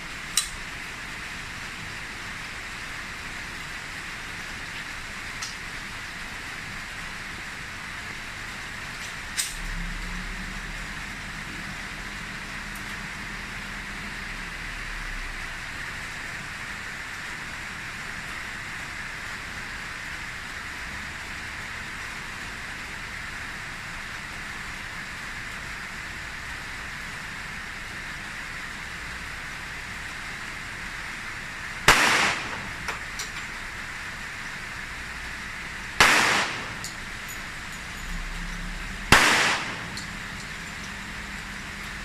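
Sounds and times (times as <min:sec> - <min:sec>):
steady hiss: 0:00.0 - 0:42.0
handgun shots: 0:31.9 - 0:33.4, 0:36.0 - 0:37.2, 0:39.1 - 0:40.2.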